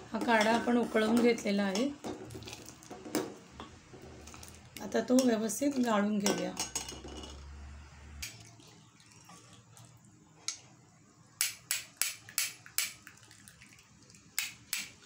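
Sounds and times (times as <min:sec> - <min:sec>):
faint liquid pouring: 0:04.1 - 0:04.7, 0:08.2 - 0:10.3, 0:12.6 - 0:14.4.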